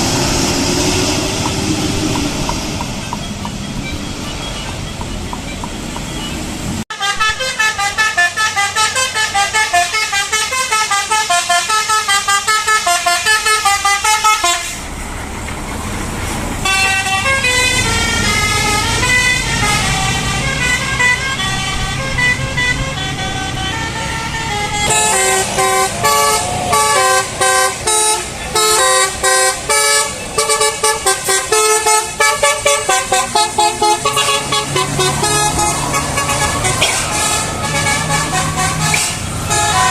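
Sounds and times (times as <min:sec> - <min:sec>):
musical air horn melodies: 0:06.9 - 0:14.9, 0:16.6 - 0:39.9.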